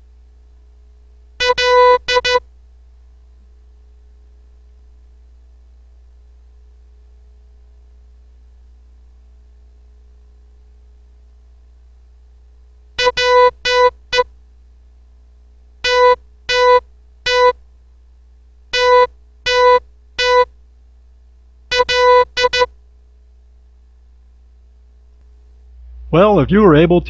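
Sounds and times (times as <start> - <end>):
morse code tones: 1.4 - 2.4, 13.0 - 14.3, 15.8 - 17.6, 18.8 - 20.5, 21.7 - 22.7.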